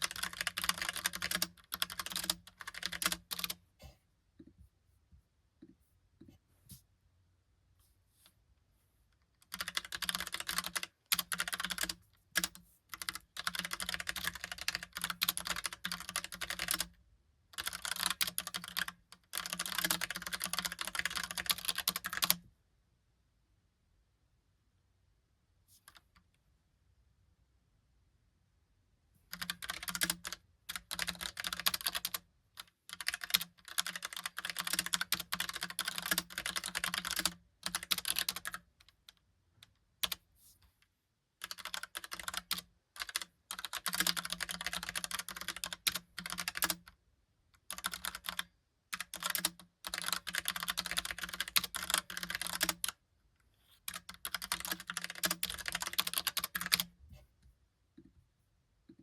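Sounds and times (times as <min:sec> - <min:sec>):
mechanical keyboard typing: 0:00.0 - 0:03.6, 0:09.4 - 0:16.9, 0:17.6 - 0:22.4, 0:29.3 - 0:39.0, 0:41.4 - 0:46.9, 0:47.6 - 0:53.0, 0:53.9 - 0:56.9.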